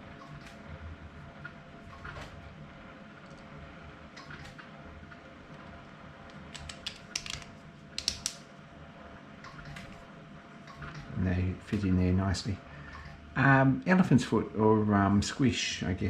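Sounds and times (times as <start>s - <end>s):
plastic parts clicking: 6.5s - 8.4s.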